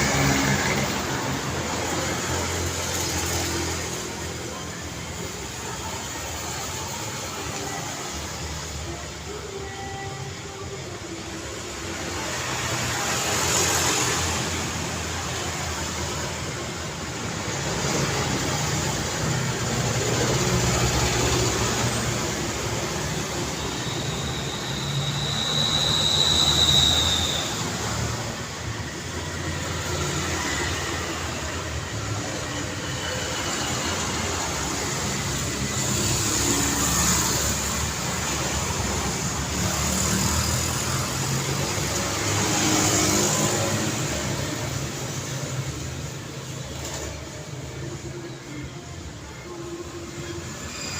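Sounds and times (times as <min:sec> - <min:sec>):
road traffic passing: 0:00.0 - 0:50.9
thin high tone: 0:20.8 - 0:39.6.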